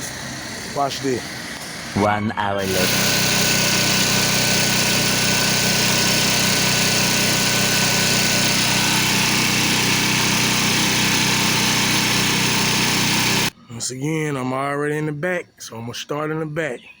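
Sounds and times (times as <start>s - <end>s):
pressure washer engine running: 0.0s - 2.0s, 2.6s - 13.6s.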